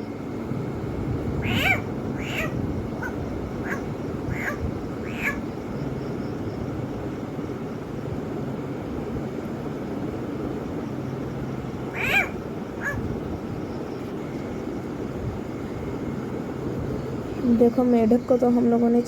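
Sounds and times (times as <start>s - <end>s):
low background hum: 0.0s - 19.0s
frog distress scream: 1.4s - 5.5s, 11.9s - 13.1s.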